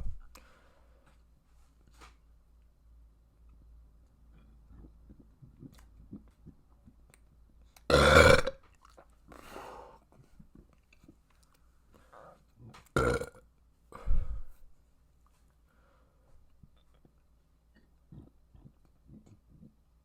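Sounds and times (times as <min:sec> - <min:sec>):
person burping loudly: 0:07.9 - 0:08.6, 0:13.0 - 0:13.4.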